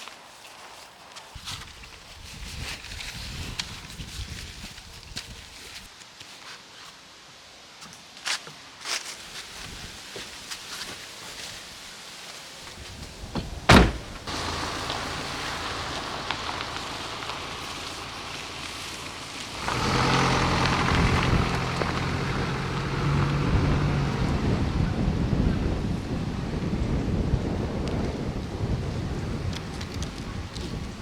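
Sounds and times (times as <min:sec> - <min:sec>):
loud thump: 0:13.4 - 0:14.3.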